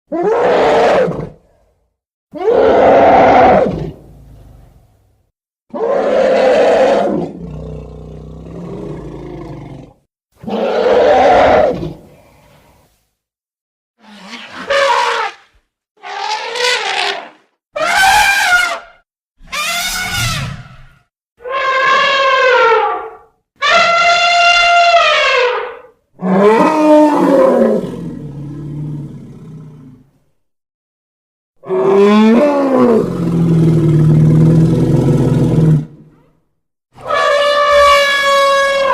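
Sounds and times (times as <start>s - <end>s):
elephant trumpeting: 14.0s - 27.4s, 37.0s - 38.9s.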